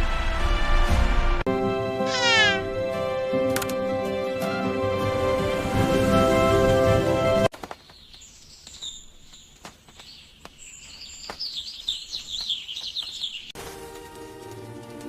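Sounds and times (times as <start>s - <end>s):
birds chirping: 2.1s - 2.7s, 7.6s - 13.6s.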